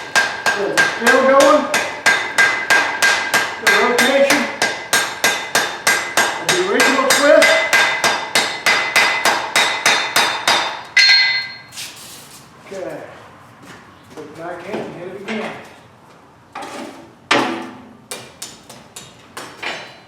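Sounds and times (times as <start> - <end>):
anvil ringing: 0.0 - 11.7
hammer striking steel on anvil: 0.0 - 11.7.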